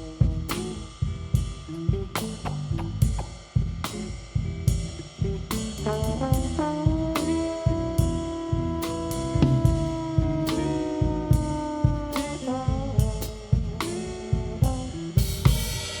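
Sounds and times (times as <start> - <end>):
bass: 0.0 - 16.0
drum kit: 0.0 - 16.0
lead instrument melody: 5.9 - 15.8.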